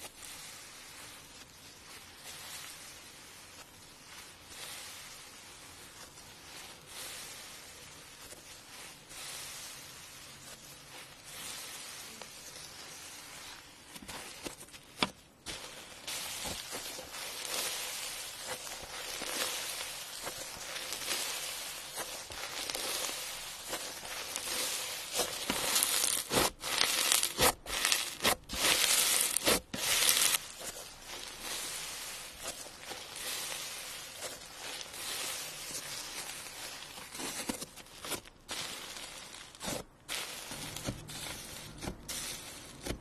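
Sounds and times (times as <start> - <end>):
slime squished by hand: 10.9 - 43.0.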